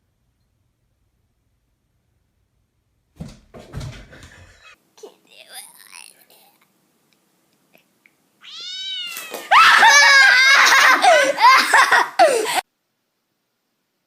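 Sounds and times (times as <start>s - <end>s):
cat meowing: 8.4s - 9.5s
cat yowling: 8.4s - 10.8s.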